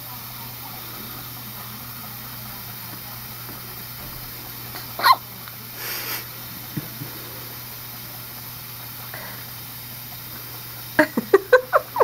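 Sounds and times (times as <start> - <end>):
steady low hum: 0.0 - 12.0
baby hiccup squeak: 5.0 - 5.2.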